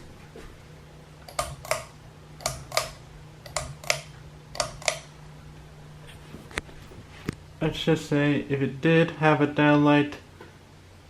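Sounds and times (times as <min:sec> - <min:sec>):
fan motor humming: 0:00.0 - 0:11.0
pull-chain switch clicks: 0:01.3 - 0:05.1.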